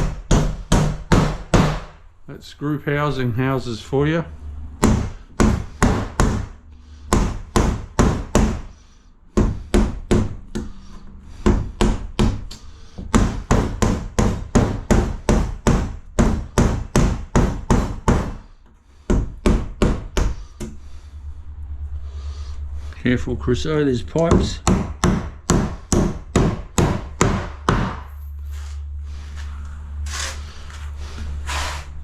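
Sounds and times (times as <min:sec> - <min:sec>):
hammer striking: 0:00.0 - 0:02.0, 0:24.3 - 0:28.1.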